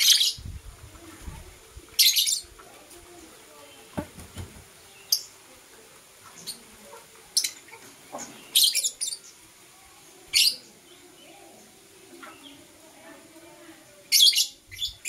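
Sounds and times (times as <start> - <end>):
birds chirping shrilly: 0.0 - 0.5, 2.0 - 2.5, 7.3 - 9.4, 10.2 - 11.7, 14.1 - 15.0.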